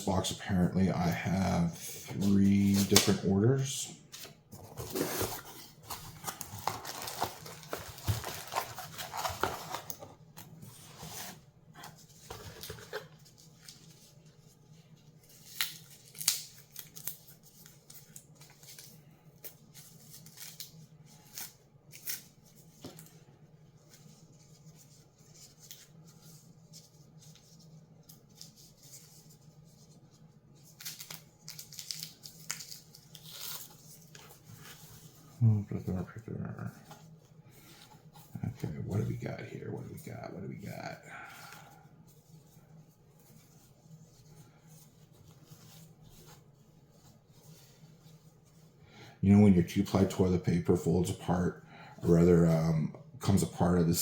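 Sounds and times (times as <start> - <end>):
wrapping paper tearing and crinkling: 4.8 - 9.9, 15.1 - 22.6, 30.6 - 34.8.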